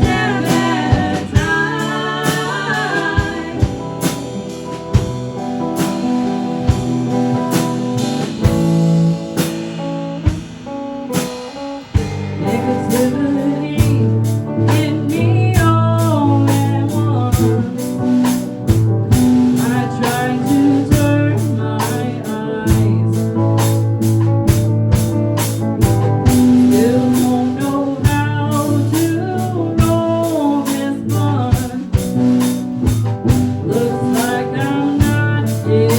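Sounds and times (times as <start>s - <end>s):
person singing: 0.0s - 4.3s, 12.4s - 18.0s, 19.5s - 23.7s, 26.6s - 32.5s, 33.4s - 35.9s
drum kit: 0.0s - 35.9s
electric guitar: 0.0s - 35.9s.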